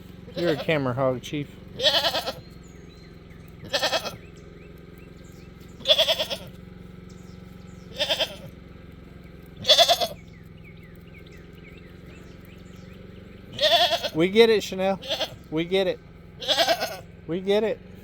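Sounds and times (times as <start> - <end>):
goat bleating loudly: 0.3 - 2.7, 3.6 - 4.4, 5.8 - 6.7, 7.8 - 8.6, 9.6 - 10.3, 13.5 - 15.7, 16.3 - 17.2.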